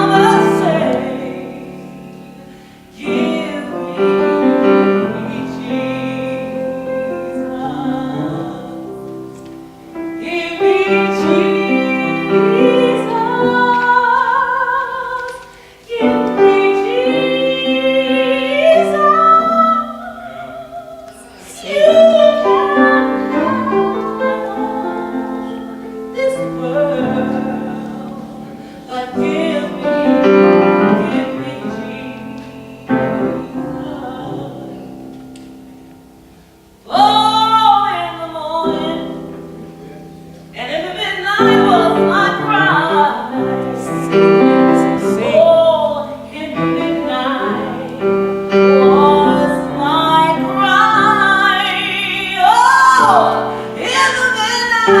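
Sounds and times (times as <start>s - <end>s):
woman singing: 0.0s - 35.1s, 36.8s - 39.3s, 40.5s - 55.0s
piano accompaniment: 0.0s - 55.0s.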